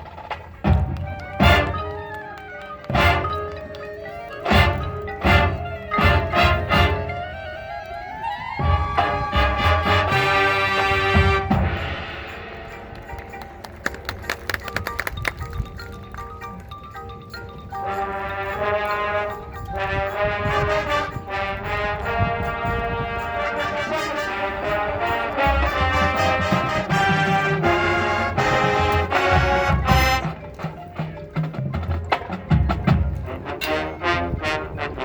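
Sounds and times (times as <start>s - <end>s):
drumline playing: 0.0s - 35.0s
brass section playing chords: 0.8s - 3.7s, 4.3s - 7.5s, 8.6s - 13.0s, 17.9s - 30.6s, 33.2s - 35.0s.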